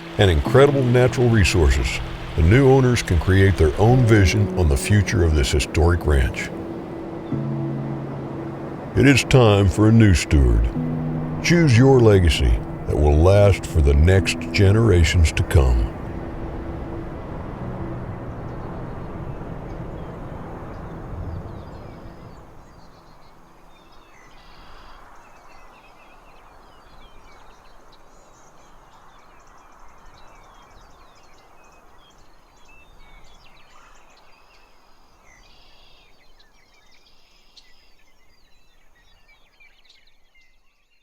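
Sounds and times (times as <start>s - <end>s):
steady rushing background: 0.0s - 22.6s.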